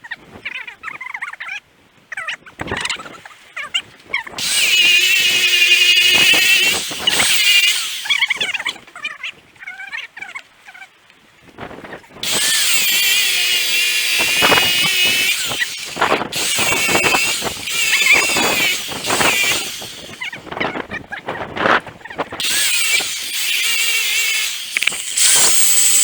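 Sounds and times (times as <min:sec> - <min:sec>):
angle grinder cutting rubber: 0:04.4 - 0:08.8, 0:12.2 - 0:20.4, 0:22.4 - 0:26.0.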